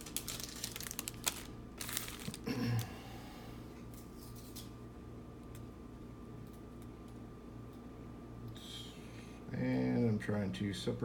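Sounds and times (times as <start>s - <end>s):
trading cards rustling and clicking: 0.0s - 2.4s
faint steady hum: 0.0s - 11.0s.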